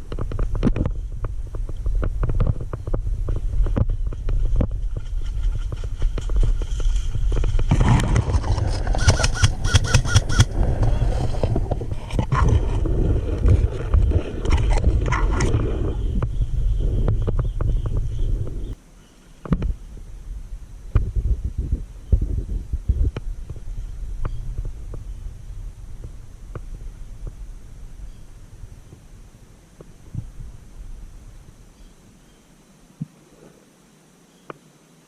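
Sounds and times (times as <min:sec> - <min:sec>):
rustling and clicks of movement: 0:00.0 - 0:16.3
wind rumbling on microphone: 0:00.0 - 0:18.8, 0:19.4 - 0:33.5.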